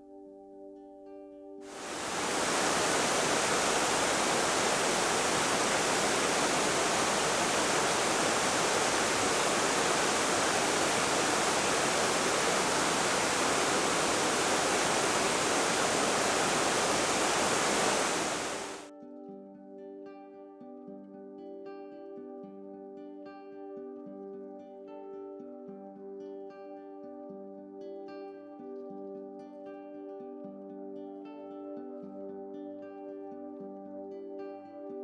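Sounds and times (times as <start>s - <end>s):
water rushing: 1.7s - 18.9s.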